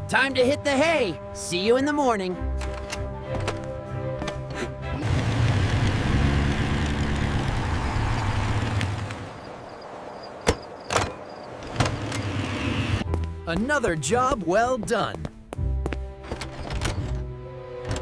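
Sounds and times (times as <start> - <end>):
vehicle rumble with rushing hiss: 5.0 - 13.0.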